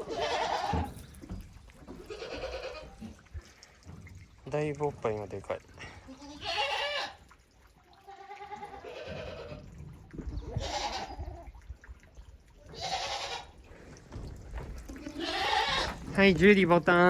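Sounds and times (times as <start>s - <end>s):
goats bleating: 0.0s - 1.0s, 1.8s - 3.2s, 5.9s - 7.3s, 8.0s - 9.7s, 10.4s - 11.4s, 12.7s - 13.7s, 14.9s - 16.2s.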